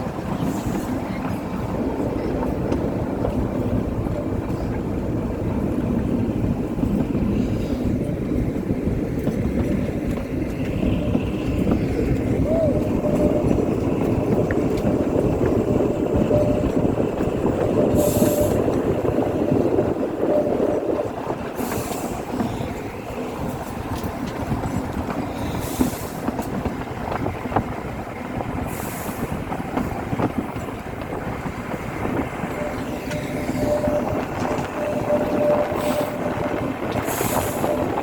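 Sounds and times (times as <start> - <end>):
train wheels rumbling on track: 0.0 - 38.0
high wheel squeal: 10.6 - 22.9, 31.3 - 38.0.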